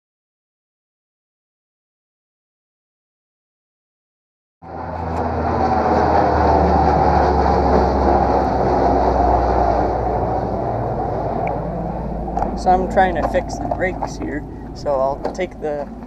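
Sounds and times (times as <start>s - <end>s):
machine running with low hum: 4.6s - 16.0s.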